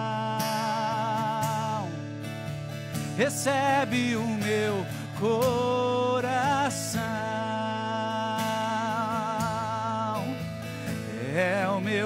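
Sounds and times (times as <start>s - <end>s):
man singing: 0.0s - 2.0s, 3.0s - 12.0s.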